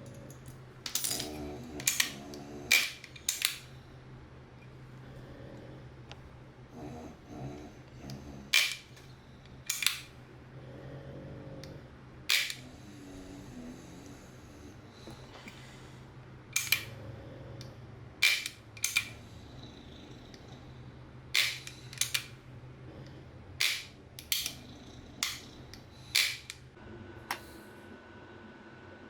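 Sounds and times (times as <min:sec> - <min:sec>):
bolt clatter: 0:00.0 - 0:03.7, 0:09.7 - 0:10.1, 0:12.3 - 0:12.6, 0:16.6 - 0:16.9, 0:18.2 - 0:19.2, 0:21.4 - 0:22.3.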